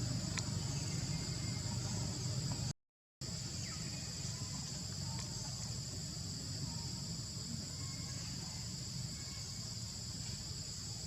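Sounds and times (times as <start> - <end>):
low background rumble: 0.0 - 2.7.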